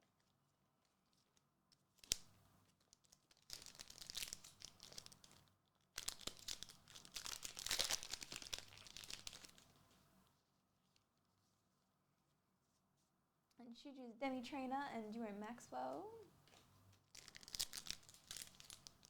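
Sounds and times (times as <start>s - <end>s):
foil wrapper tearing and crinkling: 2.0s - 2.3s, 2.9s - 9.7s, 17.1s - 19.0s.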